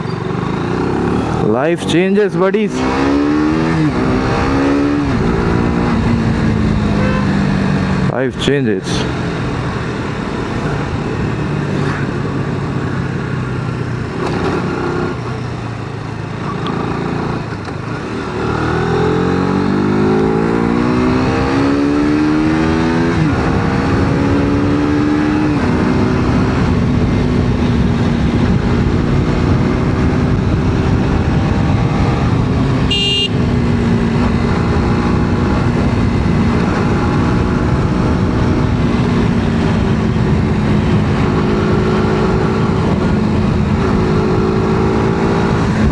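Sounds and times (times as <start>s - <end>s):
motorcycle engine accelerating: 0.0s - 45.9s
wind rush: 2.9s - 14.2s, 22.6s - 45.9s.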